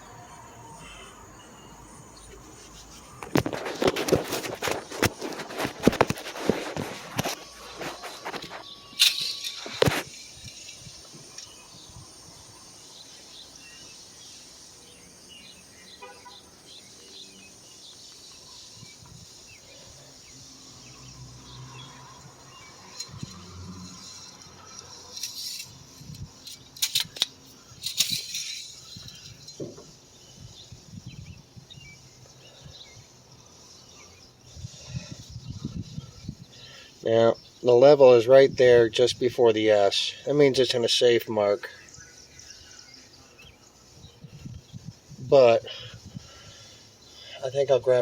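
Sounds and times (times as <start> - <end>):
high insect buzz: 0.0 - 37.6, 39.8 - 48.0
handling clicks and rustles: 2.4 - 11.6, 22.6 - 30.0.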